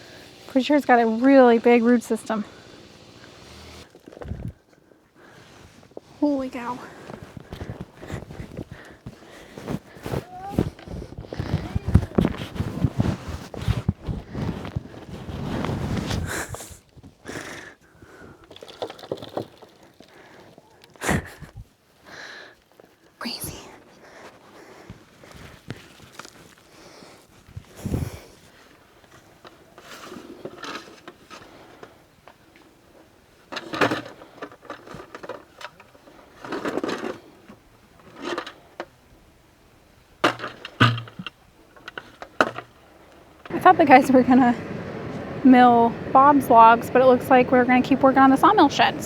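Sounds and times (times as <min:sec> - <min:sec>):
soil and leaves rustling: 0:00.0 - 0:49.0
scraping and knocking noises: 0:05.6 - 0:16.7.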